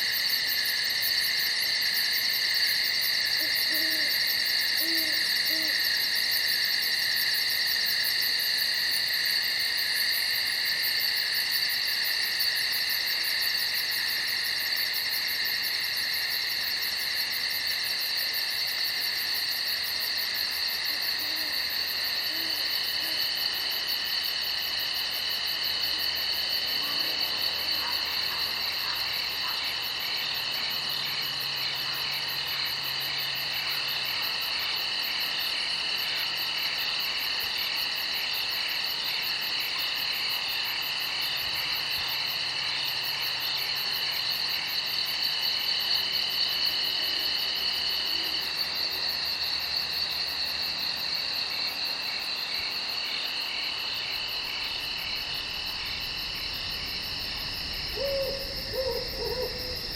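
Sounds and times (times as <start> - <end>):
crickets and insects trilling: 0.0 - 59.9
low animal call: 55.4 - 59.9.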